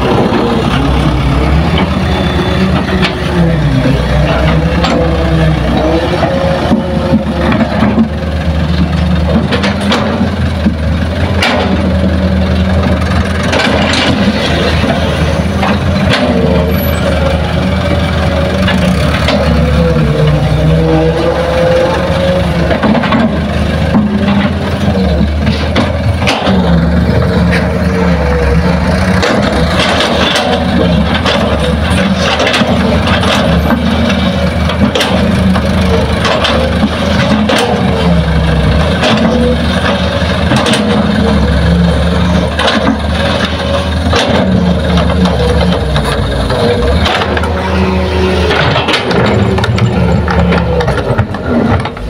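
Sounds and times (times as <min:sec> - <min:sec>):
heavy diesel engines working: 0:00.0 - 0:52.0
sharp knocks and clanks: 0:03.9 - 0:12.0, 0:12.8 - 0:16.7, 0:21.1 - 0:41.6, 0:42.3 - 0:47.6, 0:48.5 - 0:52.0.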